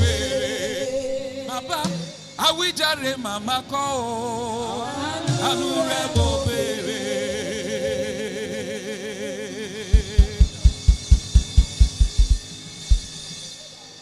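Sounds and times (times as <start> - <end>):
gospel band held note with vibrato: 0.0 - 13.6
bass drum fill: 10.0 - 13.1
cymbals ringing: 10.0 - 13.8.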